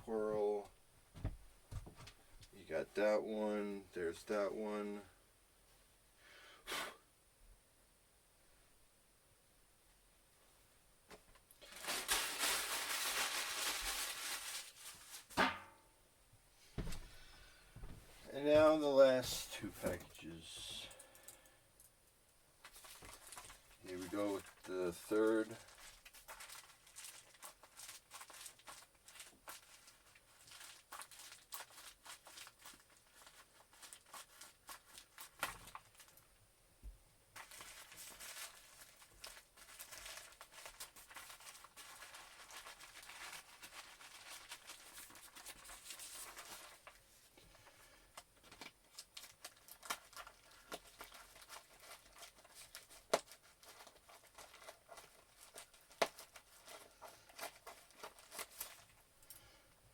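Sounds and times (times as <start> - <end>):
packaging crinkling and tearing: 11.6 - 15.3, 22.6 - 36.3, 37.4 - 47.0, 47.6 - 59.4.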